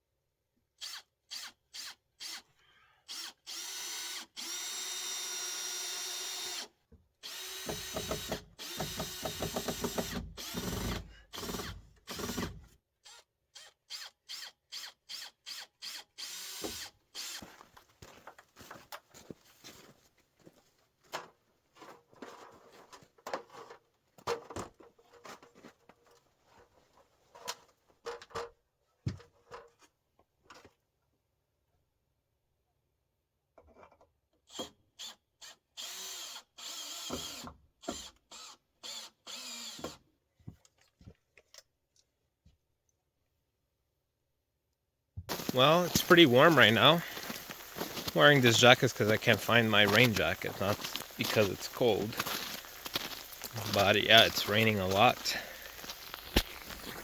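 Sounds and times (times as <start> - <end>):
power drill whining: 3.1 - 17.5, 35.8 - 40.0, 45.3 - 57.0.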